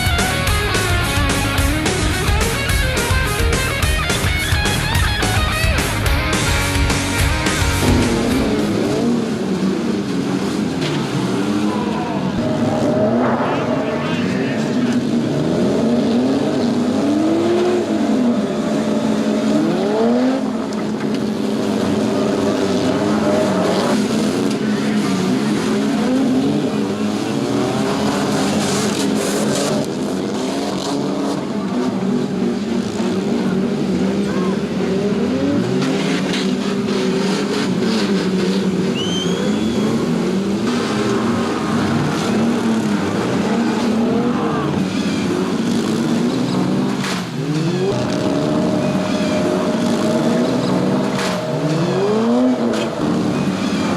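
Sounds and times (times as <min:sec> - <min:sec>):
cars knocking and crunching: 0:00.0 - 0:16.9, 0:20.5 - 0:53.9
car engines revving: 0:00.0 - 0:53.9
high squeal: 0:38.9 - 0:40.3.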